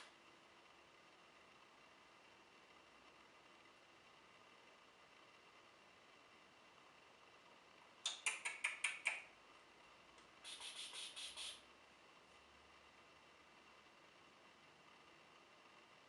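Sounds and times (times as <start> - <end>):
sharp scratches: 10.4 - 11.6.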